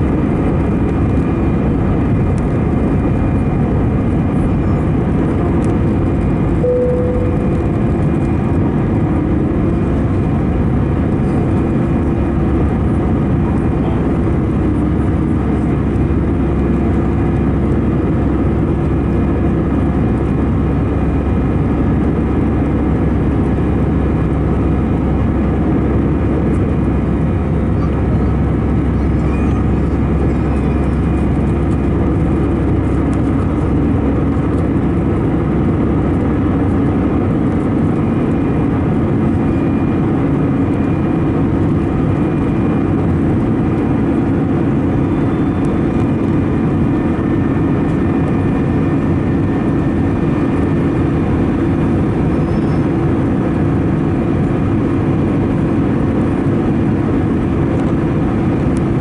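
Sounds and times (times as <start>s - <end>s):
airplane cabin engine drone: 0.0s - 59.0s
faint steady tones: 6.6s - 8.0s.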